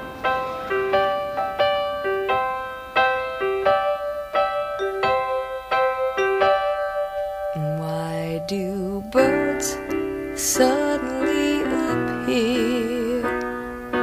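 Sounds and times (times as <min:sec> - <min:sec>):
keyboard melody: 0:00.0 - 0:14.0.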